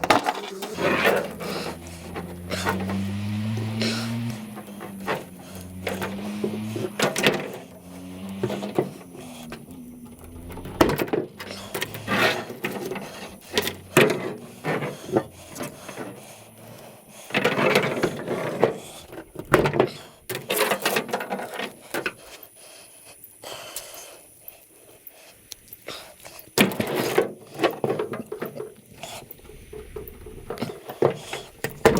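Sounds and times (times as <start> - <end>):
scrap metal clanking: 0.0 - 22.2.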